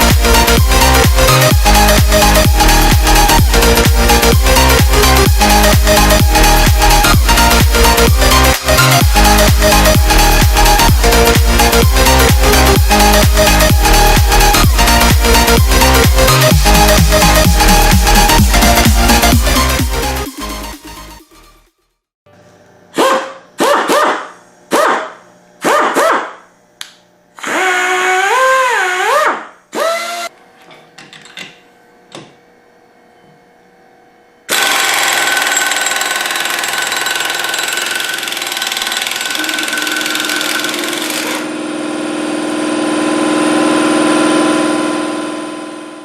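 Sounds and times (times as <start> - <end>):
pneumatic impact wrench: 34.5 - 41.6.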